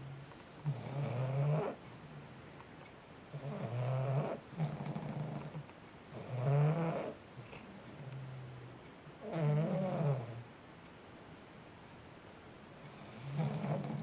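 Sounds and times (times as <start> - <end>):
dog breathing: 0.0 - 1.8, 3.3 - 8.5, 12.9 - 14.0
dog snoring: 0.0 - 1.8, 3.3 - 10.5, 12.8 - 14.0.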